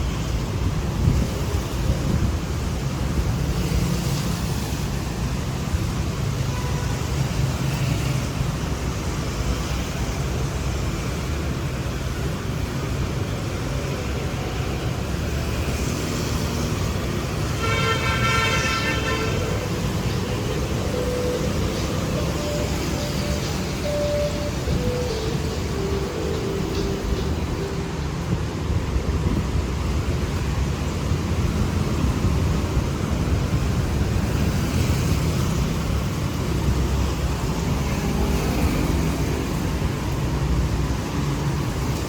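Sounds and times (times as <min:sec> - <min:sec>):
street traffic rumble: 0:00.0 - 0:42.0
vehicle horn honking: 0:17.5 - 0:27.7.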